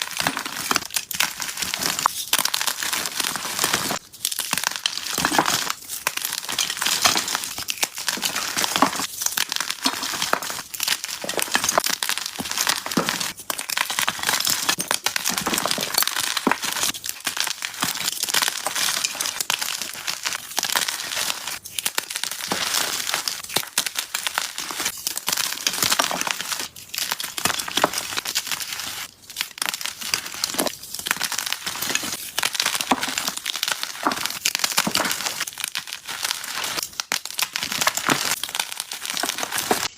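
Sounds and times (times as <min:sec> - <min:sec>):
chalk blocks crunching: 0:00.0 - 0:39.9.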